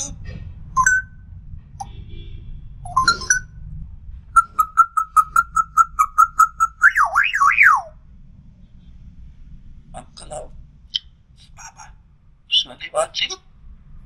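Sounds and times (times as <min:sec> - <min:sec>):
parrot whistling: 0:04.4 - 0:08.0.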